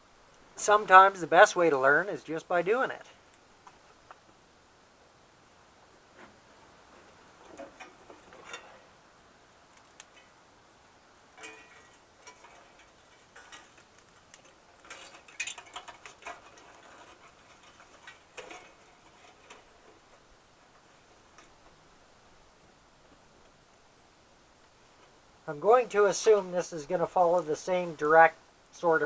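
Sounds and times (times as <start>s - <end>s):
small objects being handled: 11.3s - 21.7s.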